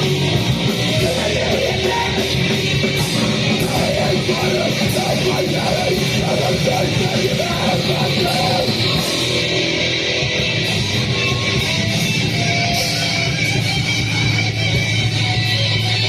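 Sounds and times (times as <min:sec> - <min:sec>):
live band playing heavy music: 0:00.0 - 0:16.0.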